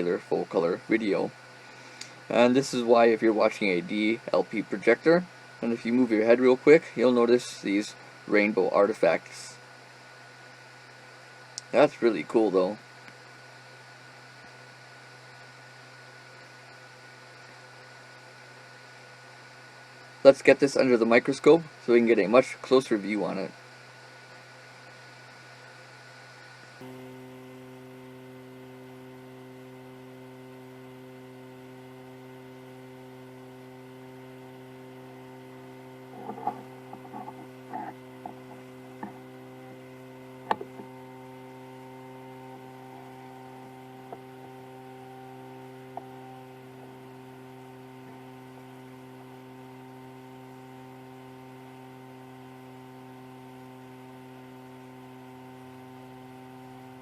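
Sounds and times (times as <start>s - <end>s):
steady electrical hum: 0.0s - 57.0s.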